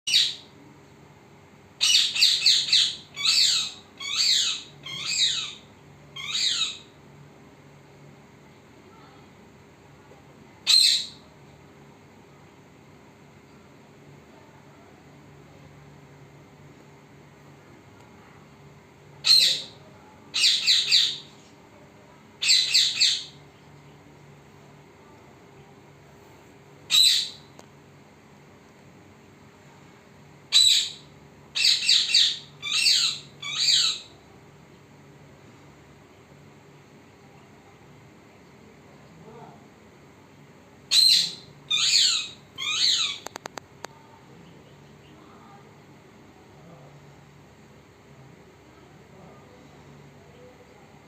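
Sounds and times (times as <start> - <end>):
parrot calling: 0.1 - 0.4, 1.8 - 6.9, 10.6 - 11.2, 19.2 - 21.3, 22.4 - 23.4, 26.9 - 27.5, 30.5 - 34.2, 40.9 - 43.4.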